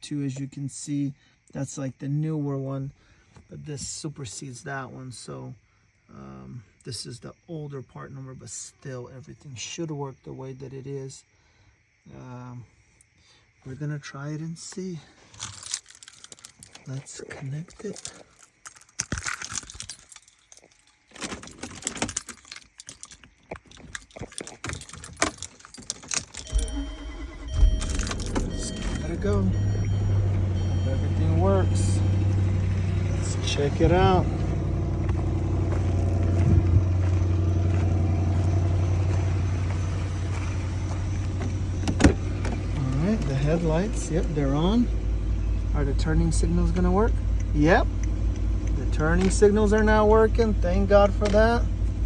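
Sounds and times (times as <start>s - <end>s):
wiring connectors clicking and rattling: 15.3s - 26.5s
car engine idling: 26.4s - 52.0s.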